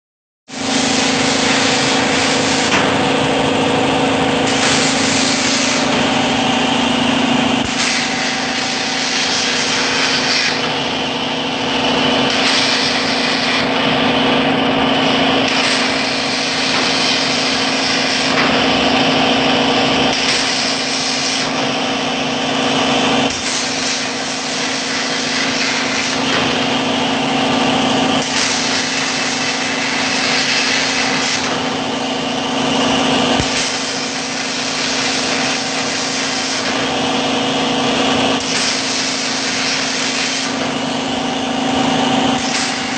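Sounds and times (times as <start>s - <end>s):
laser cutting machine hum: 0.5s - 42.9s
rushing hiss of cutting: 4.5s - 6.2s, 12.3s - 13.6s, 23.3s - 26.3s.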